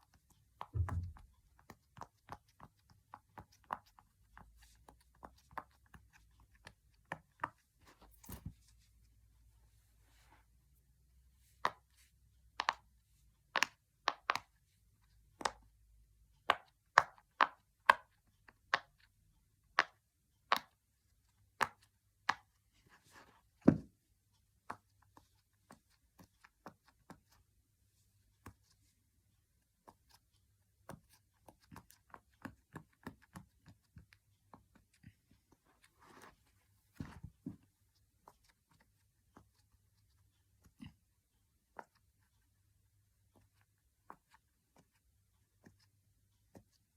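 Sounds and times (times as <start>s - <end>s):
thud: 0.8s - 1.2s.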